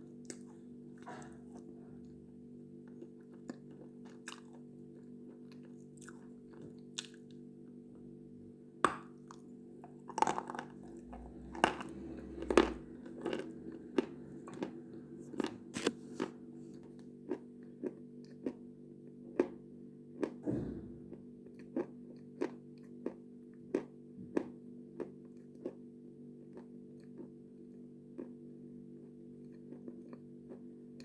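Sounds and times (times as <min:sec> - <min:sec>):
chewing crunchy food: 0:00.0 - 0:07.8, 0:09.0 - 0:20.4, 0:21.1 - 0:31.0
steady low hum: 0:00.0 - 0:22.1.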